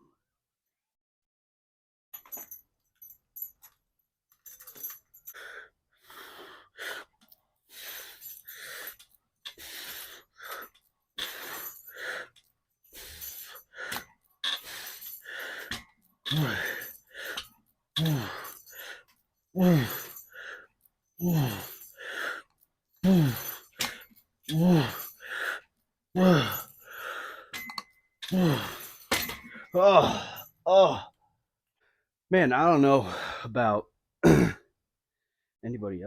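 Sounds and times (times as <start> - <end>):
man breathing hard and groaning: 4.7 - 27.6, 28.2 - 31.2, 33.0 - 33.6
light clinks: 26.4 - 29.7.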